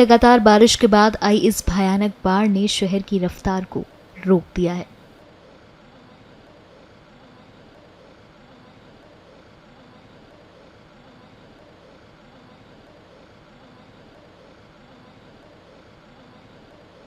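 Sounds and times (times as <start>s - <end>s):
faint background noise: 0.0s - 17.0s.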